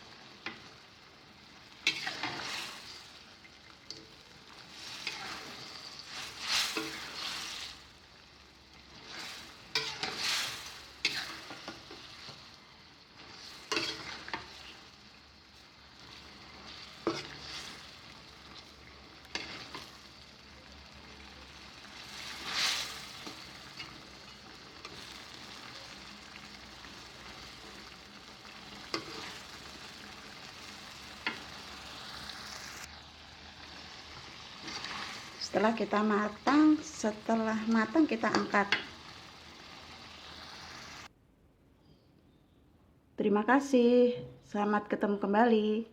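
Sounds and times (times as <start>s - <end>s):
shrimp sizzling in a pan: 0.0s - 41.1s
spatula scraping a pan: 1.8s - 7.9s, 8.8s - 12.6s, 13.2s - 15.0s, 15.6s - 20.3s, 21.9s - 28.0s, 28.6s - 32.0s, 34.5s - 35.8s.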